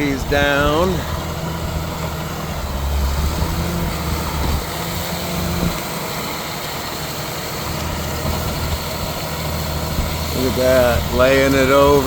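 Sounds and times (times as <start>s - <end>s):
tractor engine under load: 0.0s - 12.0s.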